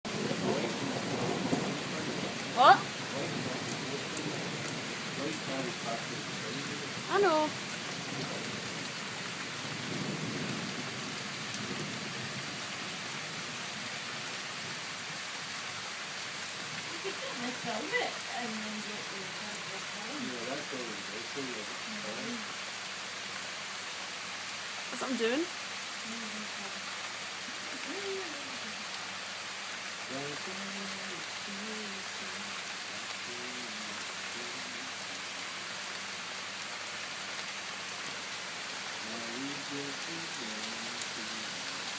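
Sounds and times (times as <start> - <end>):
steady rain: 0.0 - 41.9
low thunder rumble: 0.1 - 13.6.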